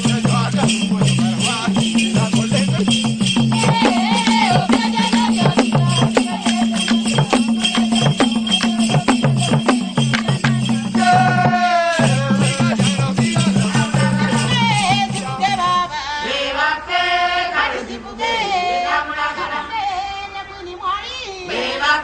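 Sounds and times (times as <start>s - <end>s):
shaken rattles: 0.0s - 11.2s
drums beating fast: 0.0s - 15.9s
voices singing: 0.0s - 22.0s.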